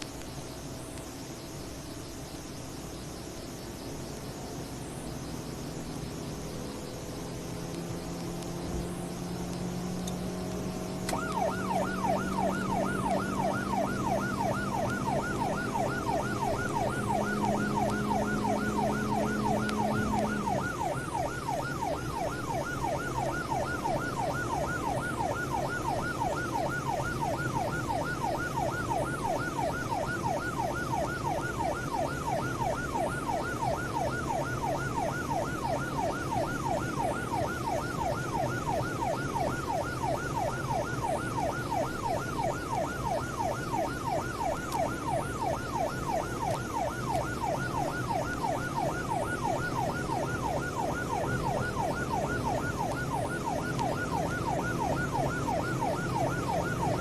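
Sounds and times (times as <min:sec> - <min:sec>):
police siren yelping: 0:00.0 - 0:57.0
car engine: 0:03.3 - 0:30.2.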